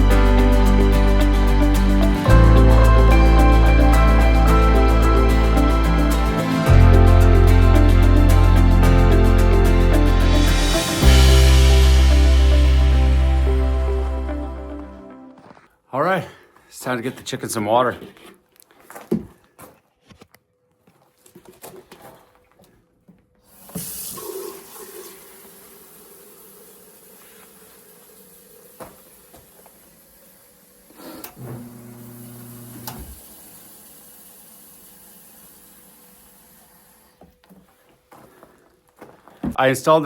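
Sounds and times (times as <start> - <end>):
tap water running into container: 23.6 - 30.0.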